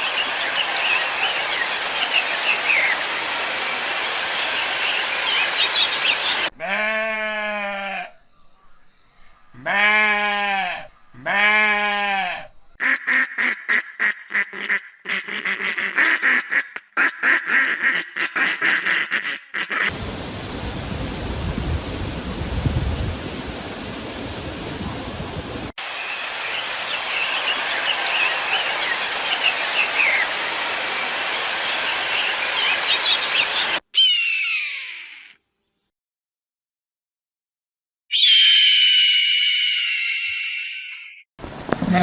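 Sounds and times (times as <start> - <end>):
ducks quacking: 12.8 - 19.9, 41.8 - 42.0.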